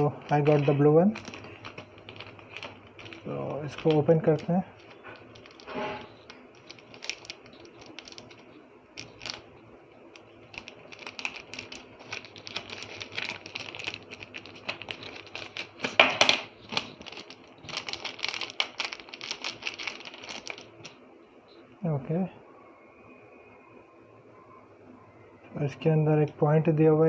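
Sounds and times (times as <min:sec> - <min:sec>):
plastic packaging clicks and crackles: 0:00.0 - 0:21.0
plastic packaging rustle: 0:00.0 - 0:21.0.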